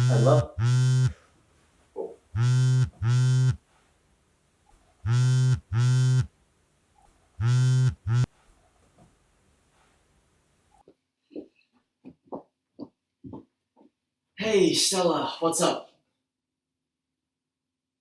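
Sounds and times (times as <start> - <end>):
phone vibrating buzzes: 0.0 - 1.2, 2.4 - 3.6, 5.1 - 6.3, 7.4 - 8.3.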